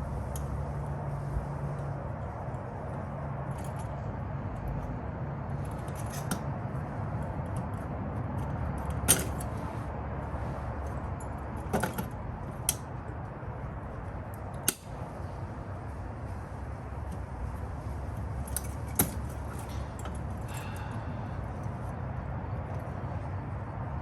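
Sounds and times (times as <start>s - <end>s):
steady low hum: 0.0s - 24.0s
small metal parts clicking and jingling: 5.5s - 6.4s, 7.2s - 9.6s, 18.1s - 21.0s.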